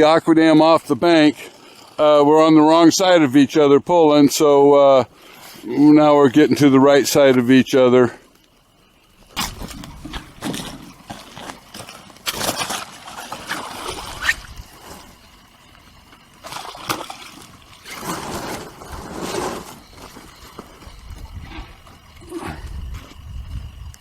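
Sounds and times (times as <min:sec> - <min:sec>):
lake water sloshing and splashing: 0:09.4 - 0:22.7.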